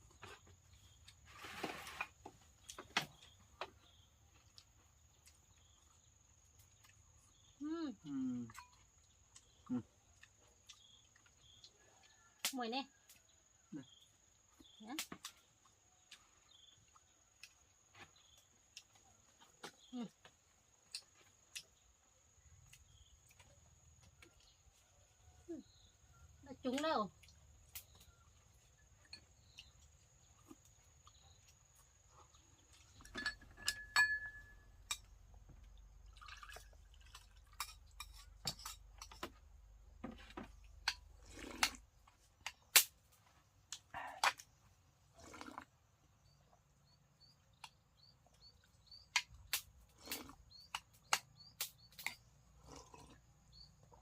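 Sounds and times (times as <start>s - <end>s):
dishes and utensils clinking: 33.0s - 35.1s, 37.5s - 39.3s.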